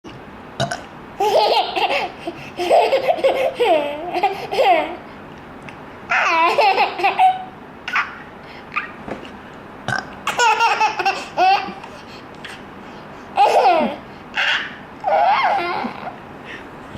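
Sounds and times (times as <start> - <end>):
small child giggling: 1.2 - 5.1, 6.1 - 9.0, 10.3 - 12.1, 13.4 - 16.2.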